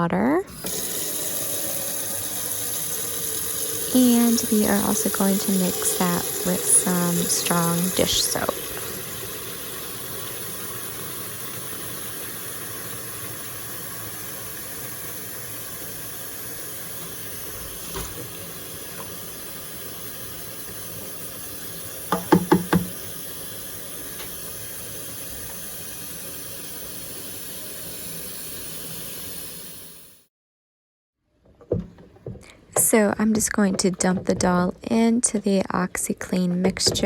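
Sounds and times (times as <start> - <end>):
water running from a tap into a tub: 0.5 - 30.3
knocks: 22.1 - 23.0, 31.6 - 32.9.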